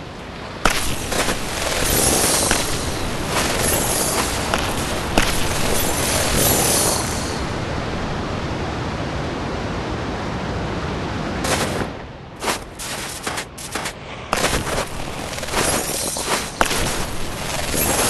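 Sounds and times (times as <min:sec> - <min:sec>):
snowboard on snow: 0:00.6 - 0:08.8, 0:11.2 - 0:18.0
wind rushing: 0:00.7 - 0:09.8.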